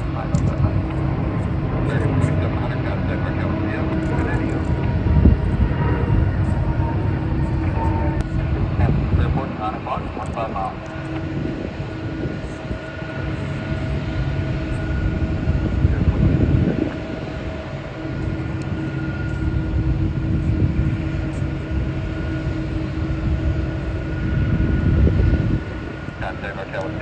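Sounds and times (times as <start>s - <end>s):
jet engines rumbling and whining: 0.0s - 27.0s.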